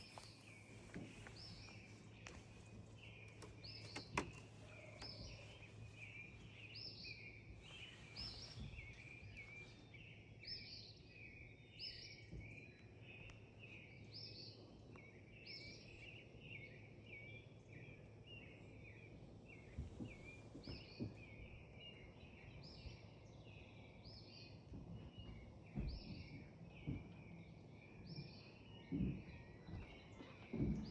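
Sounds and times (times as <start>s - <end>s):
birds twittering: 0.0s - 22.5s.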